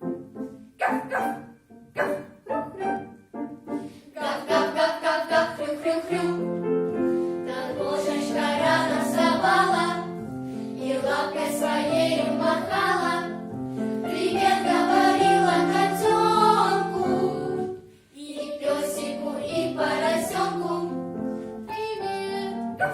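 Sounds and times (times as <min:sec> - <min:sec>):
instrumental accompaniment: 0:00.0 - 0:04.8
group singing children's song: 0:03.9 - 0:06.6, 0:07.3 - 0:22.9.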